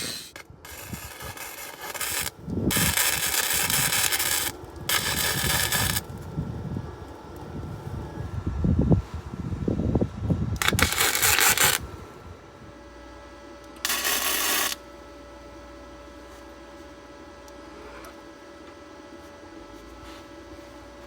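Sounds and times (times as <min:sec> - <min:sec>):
crackling welding arc: 0:00.0 - 0:06.3, 0:10.6 - 0:11.8, 0:13.8 - 0:14.8.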